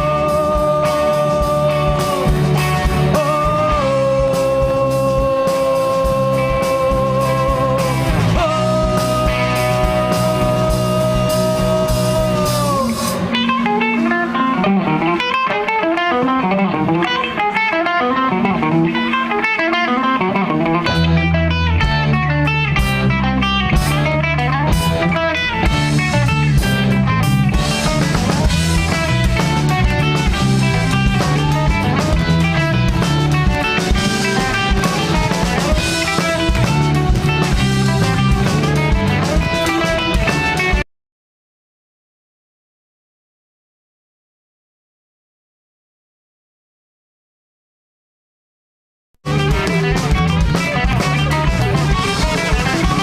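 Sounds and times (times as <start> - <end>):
heavy bass line: 0.0 - 15.3, 17.8 - 40.8, 49.2 - 53.0
electric guitar notes: 0.0 - 40.8, 49.2 - 53.0
rock band playing: 0.0 - 40.8, 49.2 - 53.0
drums: 0.0 - 40.9, 49.2 - 53.0.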